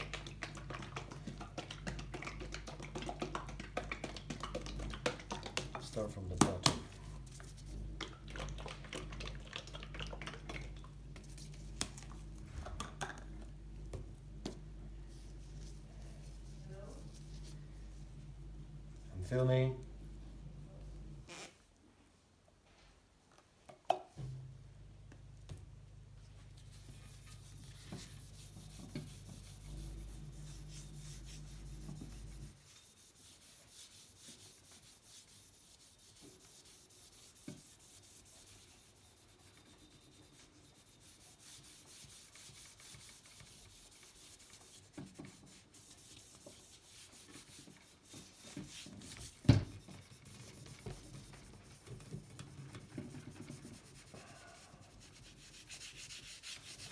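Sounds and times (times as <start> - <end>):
scratchy rubbing on metal: 26.6 - 56.9.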